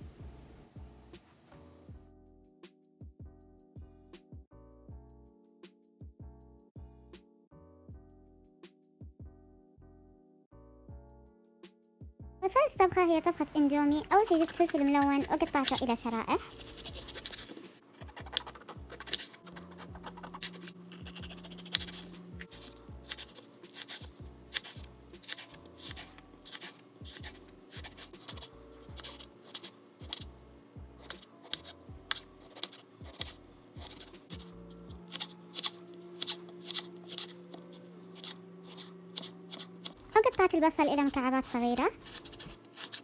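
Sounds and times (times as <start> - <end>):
soft background music: 0.0 - 43.0
knife chopping on cutting board: 14.2 - 30.3, 31.0 - 37.4, 42.0 - 43.0.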